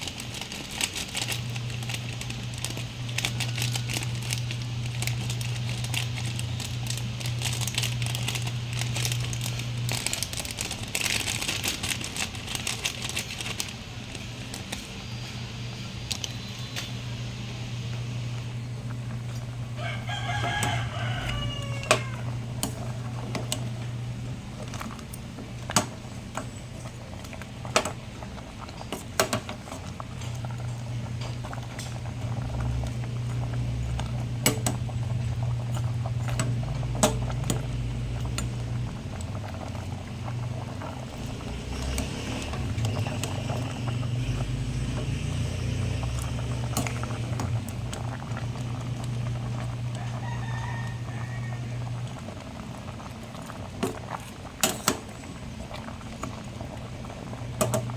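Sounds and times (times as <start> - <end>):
steady low hum: 0.0 - 57.9
chicken calling: 19.8 - 22.6.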